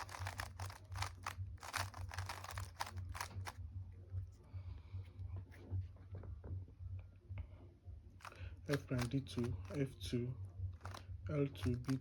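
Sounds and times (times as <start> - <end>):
puzzle cube plastic clacks: 0.0 - 3.6, 8.2 - 9.8, 10.8 - 11.0, 11.6 - 12.0
steady low hum: 0.0 - 12.0.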